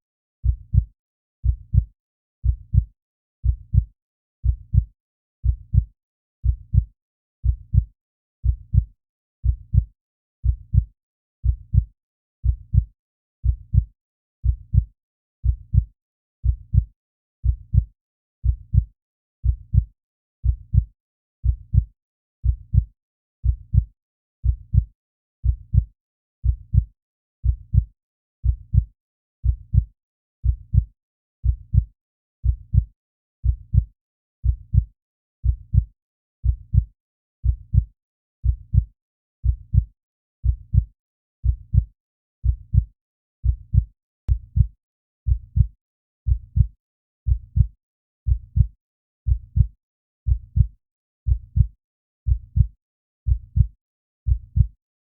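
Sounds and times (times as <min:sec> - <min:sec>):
slow heartbeat thumps: 0:02.5 - 0:03.9, 0:04.5 - 0:04.9, 0:05.5 - 0:06.9, 0:27.5 - 0:27.9, 0:28.5 - 0:28.9, 0:29.5 - 0:29.9, 0:30.5 - 0:30.9, 0:31.5 - 0:32.9, 0:33.5 - 0:33.9, 0:35.5 - 0:35.9, 0:36.5 - 0:36.9, 0:37.5 - 0:38.9, 0:39.5 - 0:40.9, 0:41.5 - 0:41.9, 0:42.5 - 0:42.9, 0:43.5 - 0:44.7, 0:45.3 - 0:45.7, 0:46.3 - 0:46.7, 0:47.3 - 0:47.7, 0:48.3 - 0:48.7, 0:49.3 - 0:49.7, 0:50.3 - 0:50.7, 0:51.3 - 0:51.7, 0:52.3 - 0:52.7, 0:53.3 - 0:53.7, 0:54.3 - 0:54.7.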